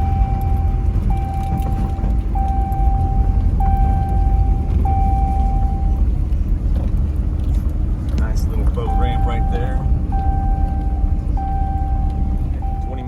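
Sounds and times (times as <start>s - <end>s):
electronic warning tone: 0.0s - 6.0s, 8.8s - 13.0s
engine and road rumble: 0.0s - 13.0s.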